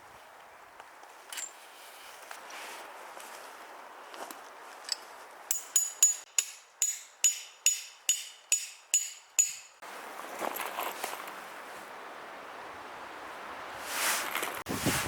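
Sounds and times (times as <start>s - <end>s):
hammer striking metal stake: 5.5s - 9.8s.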